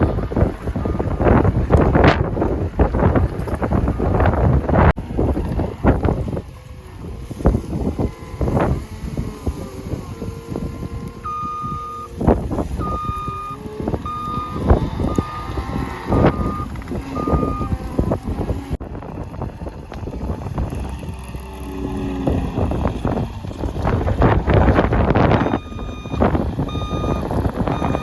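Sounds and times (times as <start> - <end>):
engine rumble: 0.0 - 28.0
wind buffeting microphone: 0.0 - 28.0
reversing alarm beeping: 10.3 - 18.5, 25.2 - 28.0.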